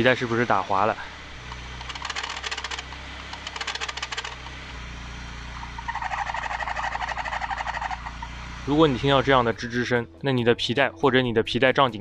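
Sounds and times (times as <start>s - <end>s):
drive belt squeaking: 0.0s - 4.8s, 5.4s - 9.5s
car engine idling: 0.0s - 9.8s.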